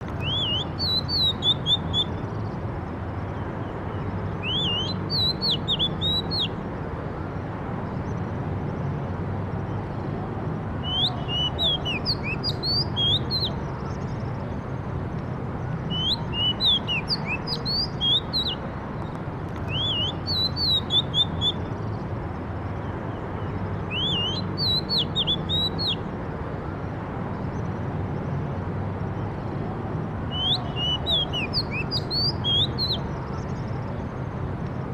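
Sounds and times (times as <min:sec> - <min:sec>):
songbird chirping: 0:00.0 - 0:06.6, 0:10.8 - 0:26.1, 0:30.2 - 0:34.3.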